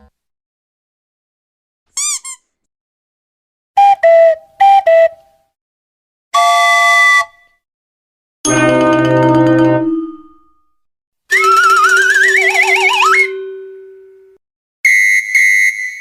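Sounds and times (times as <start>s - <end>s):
falling two-note tones: 11.4s - 14.4s.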